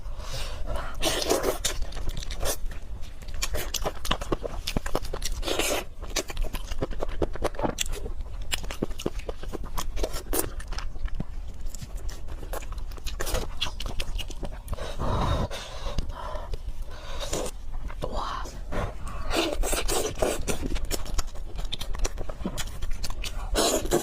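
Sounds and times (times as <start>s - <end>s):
chewing with wet mouth clicks: 0.9s - 15.0s, 19.0s - 24.0s.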